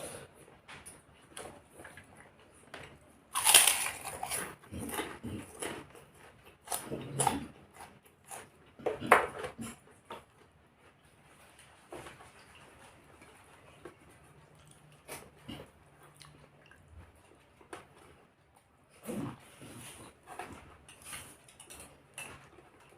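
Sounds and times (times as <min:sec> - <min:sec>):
person chewing crunchy food: 0:01.3 - 0:10.6, 0:14.1 - 0:22.6.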